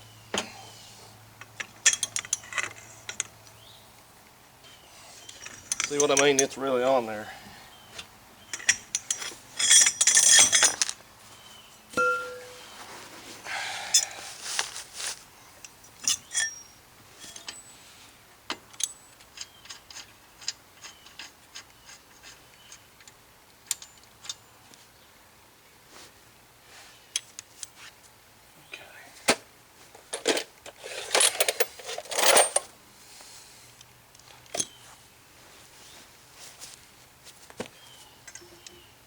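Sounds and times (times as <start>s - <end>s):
metal hand tools clinking: 8.5s - 11.0s, 12.0s - 12.7s, 16.0s - 17.6s, 30.2s - 32.7s.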